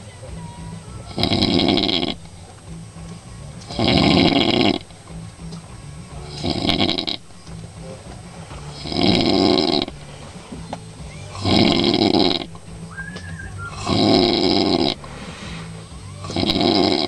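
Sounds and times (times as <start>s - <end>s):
man snoring: 1.1s - 2.3s, 3.7s - 5.0s, 6.2s - 7.2s, 8.7s - 10.2s, 11.3s - 12.6s, 13.7s - 17.0s.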